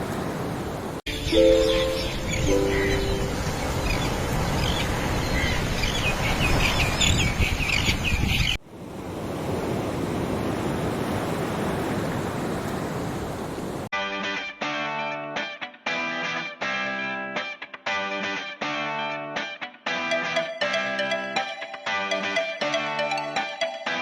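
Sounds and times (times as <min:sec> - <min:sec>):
ocean surf: 0:00.0 - 0:13.9
small birds chirping: 0:01.1 - 0:08.6.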